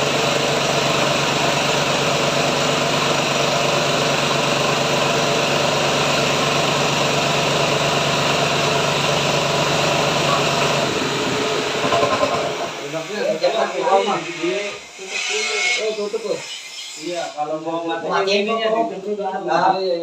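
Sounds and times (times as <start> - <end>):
rice mill humming: 0.0 - 13.6.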